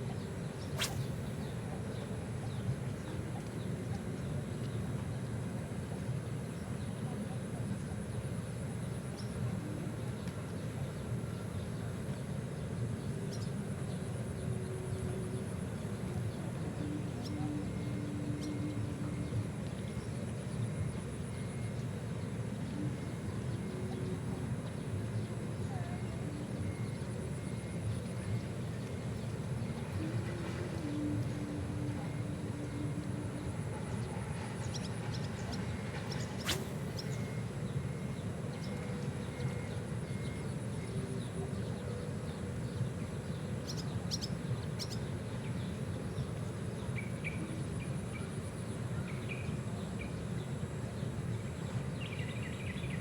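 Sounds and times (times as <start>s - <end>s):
faint high insect calls: 0.0s - 53.0s
sharp click: 0.8s - 1.3s, 36.4s - 37.1s.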